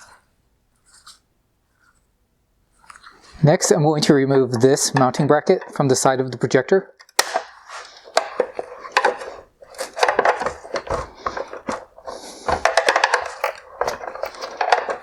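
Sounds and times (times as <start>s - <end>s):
plastic parts rattling: 2.8s - 15.0s
hand tool clicking and knocking: 4.6s - 15.0s.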